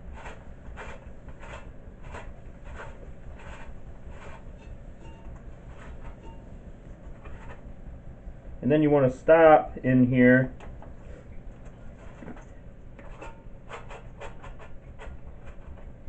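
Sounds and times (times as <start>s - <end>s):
recoil starter clicking and rubbing: 0.0s - 7.7s, 12.1s - 16.0s.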